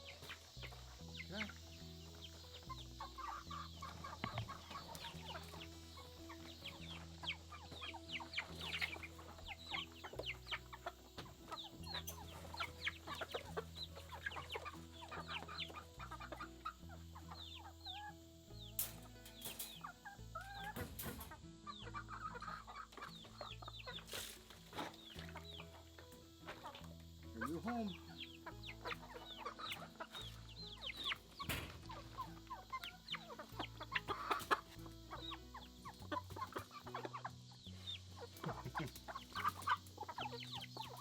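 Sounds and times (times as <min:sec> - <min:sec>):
chicks peeping: 0:00.0 - 0:41.0.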